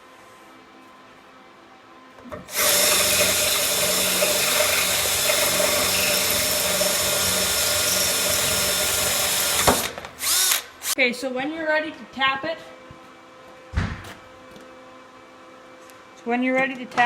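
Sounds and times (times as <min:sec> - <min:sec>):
power drill whining: 0:02.5 - 0:11.0.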